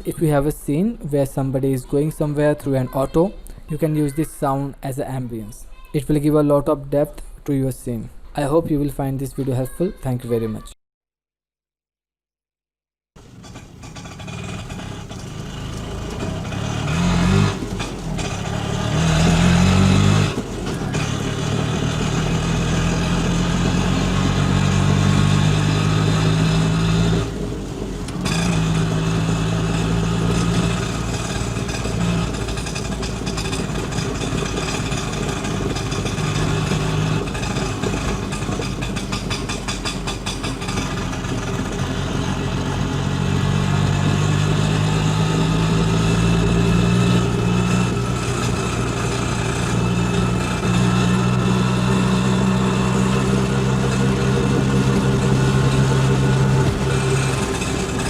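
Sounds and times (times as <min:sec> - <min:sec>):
auto rickshaw engine revving: 0:13.2 - 0:58.0.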